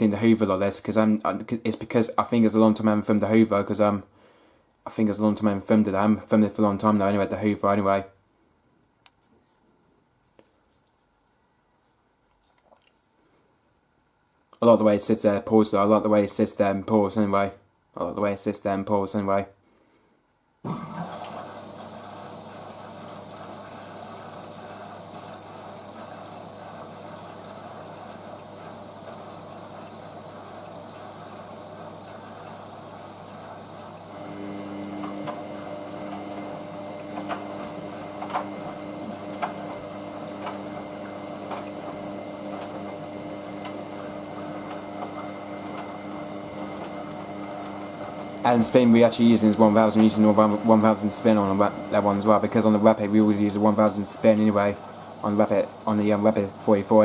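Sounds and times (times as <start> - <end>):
water rushing into washing machine: 0.0 - 4.0, 20.7 - 57.0
low electrical hum: 0.0 - 57.0.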